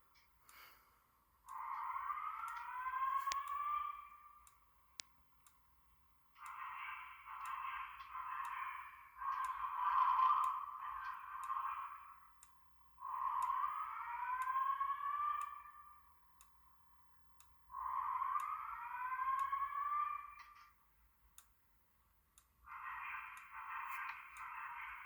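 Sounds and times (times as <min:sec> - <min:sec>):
whoop alarm tone: 0:01.5 - 0:04.4, 0:13.0 - 0:16.0, 0:17.7 - 0:20.6
faint ticks: 0:06.4 - 0:12.6, 0:13.4 - 0:13.6, 0:17.4 - 0:17.6, 0:19.3 - 0:19.7, 0:23.4 - 0:24.5.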